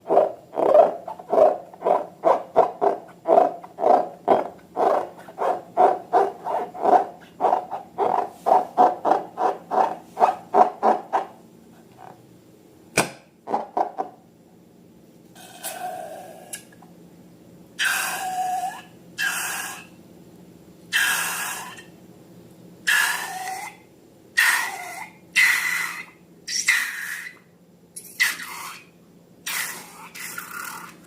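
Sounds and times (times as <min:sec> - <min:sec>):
sharp snap: 0:13.0 - 0:13.3.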